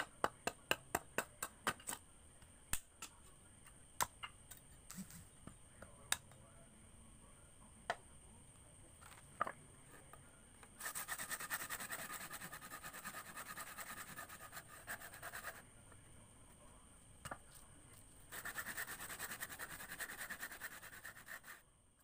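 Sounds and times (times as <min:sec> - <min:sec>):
hand sanding wood: 0:10.8 - 0:15.6, 0:18.3 - 0:21.6.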